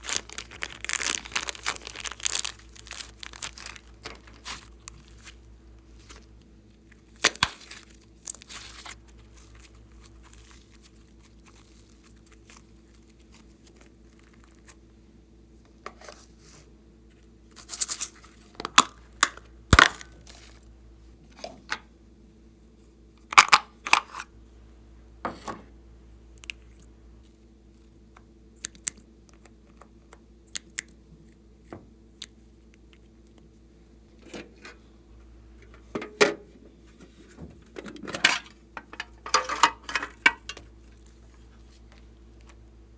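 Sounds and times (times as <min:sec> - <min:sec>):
sticky slime crackles and pops: 0:00.0 - 0:05.4, 0:19.3 - 0:20.5
faint steady hum: 0:00.0 - 0:42.9.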